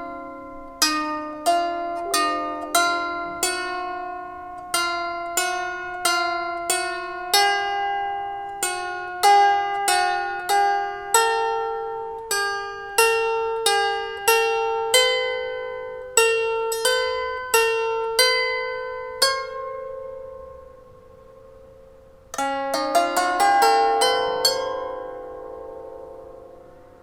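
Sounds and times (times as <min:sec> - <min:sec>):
lyre harp plucked melody: 0:00.0 - 0:12.2.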